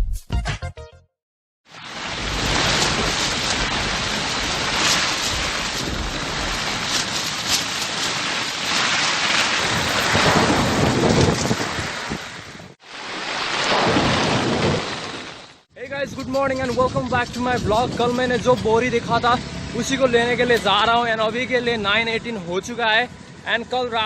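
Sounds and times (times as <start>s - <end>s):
heavy rain pouring: 1.7s - 15.6s
thunder rumbling: 1.8s - 12.8s, 13.5s - 15.2s.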